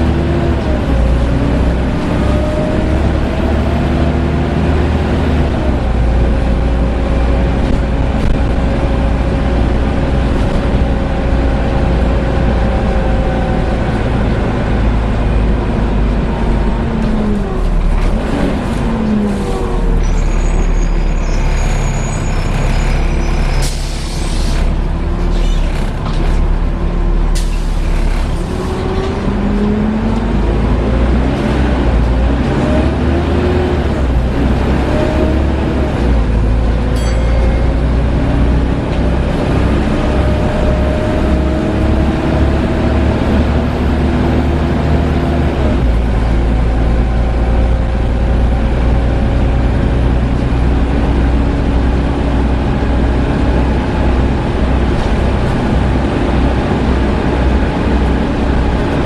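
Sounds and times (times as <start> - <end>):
bus engine: 0.0 - 59.0
air brakes hissing: 23.5 - 24.7, 27.4 - 27.9.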